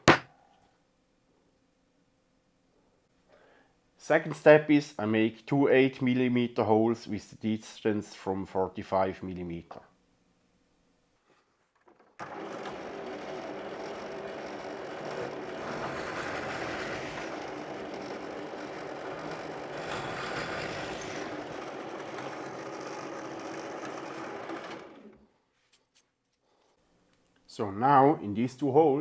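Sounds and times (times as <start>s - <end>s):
electric drill drilling into wood: 12.2s - 25.1s.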